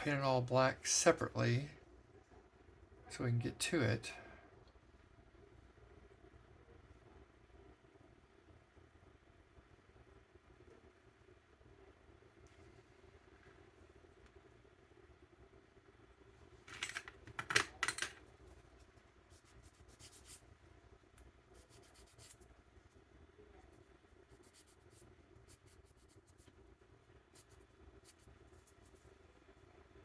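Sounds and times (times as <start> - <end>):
plastic parts rustling and clicking: 16.6 - 18.2.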